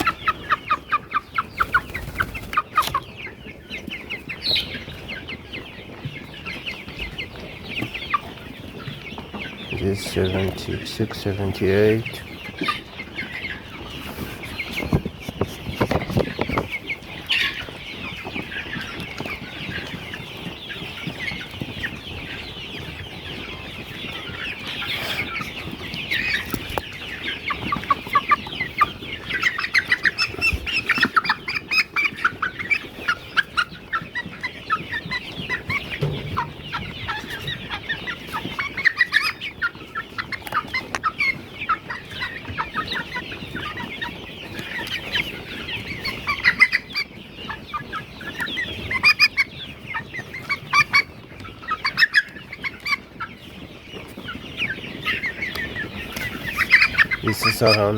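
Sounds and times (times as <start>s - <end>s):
chickens clucking and chirping: 0.0s - 57.9s
dull knocks: 35.8s - 37.0s.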